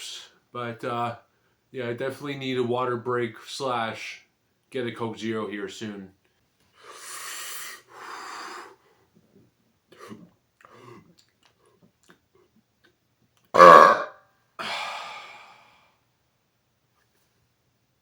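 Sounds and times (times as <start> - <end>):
man burping: 13.6 - 14.1.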